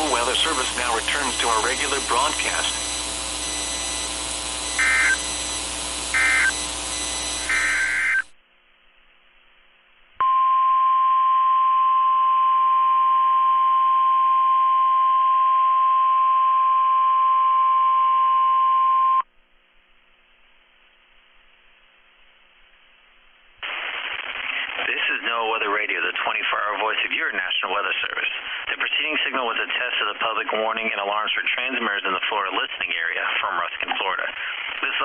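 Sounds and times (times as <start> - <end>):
digital data tone bursts: 0.0 - 8.3
radio hiss: 0.0 - 8.3, 23.6 - 35.0
steady warning alarm tone: 0.0 - 8.3.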